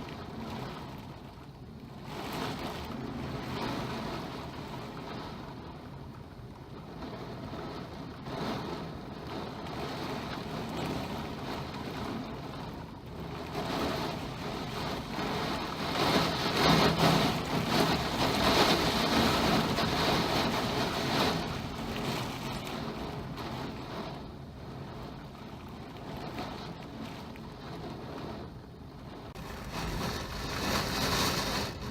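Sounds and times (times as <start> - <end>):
wind-driven heavy rain: 0.0 - 31.9.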